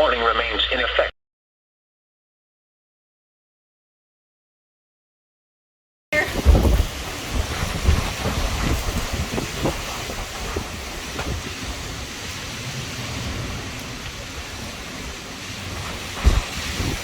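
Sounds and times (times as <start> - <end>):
heavy rain: 6.2 - 17.0
wind gusting against microphone: 6.2 - 17.0.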